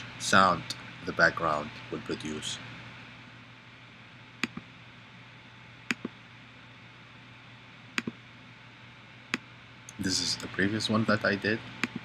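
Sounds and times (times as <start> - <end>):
faint background hum: 0.0 - 12.0
computer mouse clicks: 4.4 - 4.7, 5.9 - 6.2, 8.0 - 8.2, 11.8 - 12.0.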